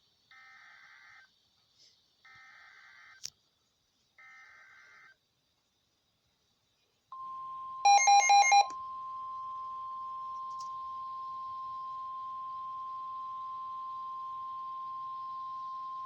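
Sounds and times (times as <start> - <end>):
short electronic beeps: 7.9 - 8.7.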